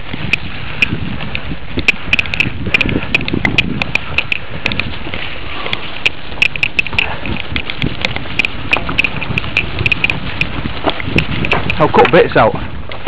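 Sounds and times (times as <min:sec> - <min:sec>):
mountain bike clattering: 0:00.0 - 0:13.0
wind noise on microphone: 0:00.0 - 0:13.0.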